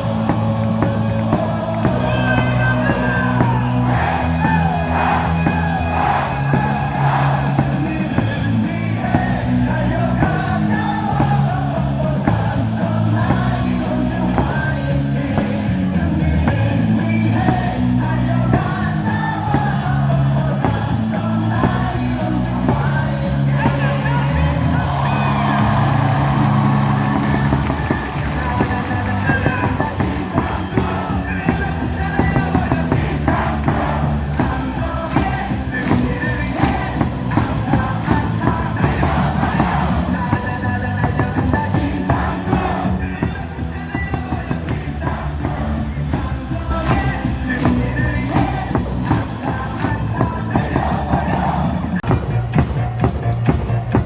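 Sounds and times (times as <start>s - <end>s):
crowd singing and shouting: 0.0s - 54.0s
music over loudspeakers: 0.0s - 54.0s.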